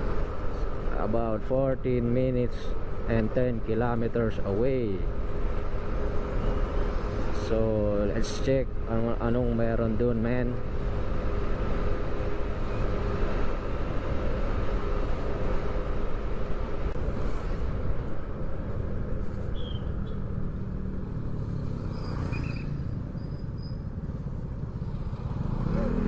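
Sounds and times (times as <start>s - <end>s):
wind rumble: 10.8s - 25.6s
motorcycle engine: 18.7s - 26.0s.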